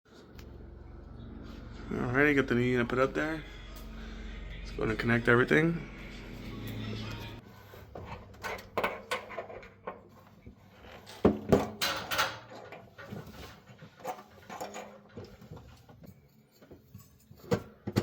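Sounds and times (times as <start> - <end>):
tools and fittings clinking: 8.0 - 10.2, 10.9 - 18.0.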